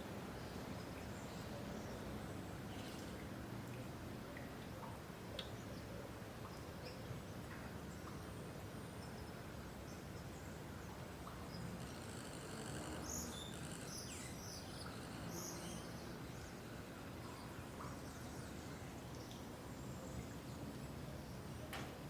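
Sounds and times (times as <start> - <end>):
steady low background noise: 0.0 - 22.0.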